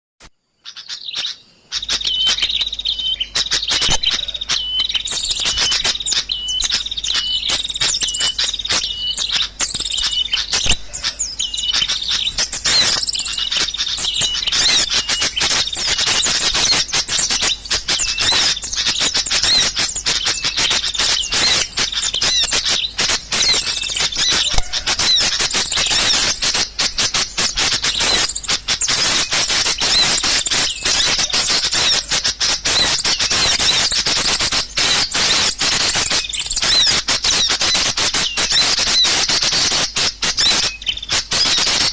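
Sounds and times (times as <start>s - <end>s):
small birds chirping: 0.5s - 41.9s
short repeated bird call: 0.6s - 41.9s.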